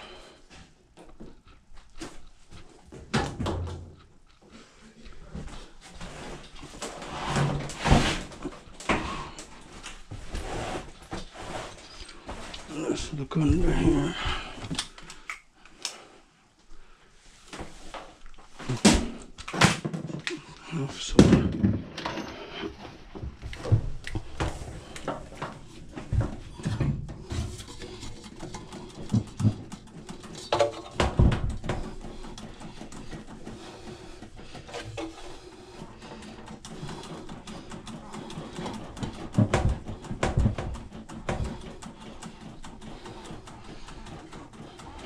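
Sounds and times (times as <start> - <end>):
knocks and clunks on washer cabinet: 30.6 - 32.0.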